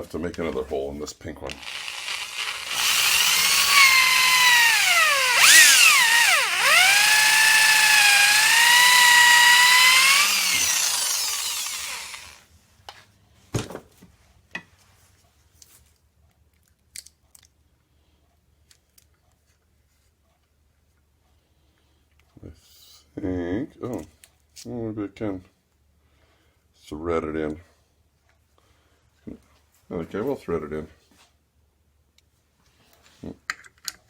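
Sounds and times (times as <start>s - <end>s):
electric drill whining: 1.5s - 12.4s.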